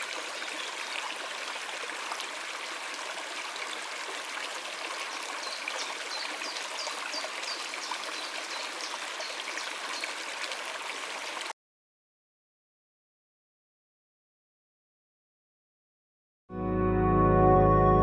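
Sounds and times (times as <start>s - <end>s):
flowing stream water: 0.0s - 11.6s.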